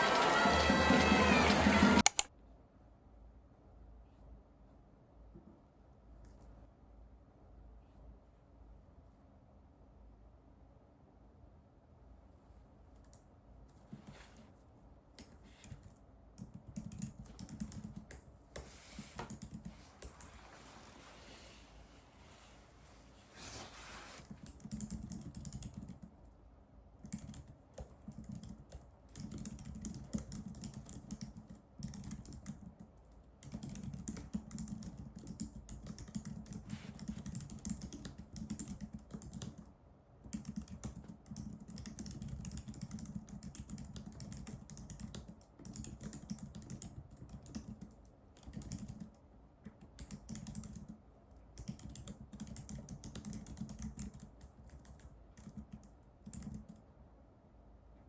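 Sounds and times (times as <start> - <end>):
computer keyboard typing: 0.0 - 2.3, 15.2 - 20.4, 24.3 - 26.1, 27.0 - 56.8.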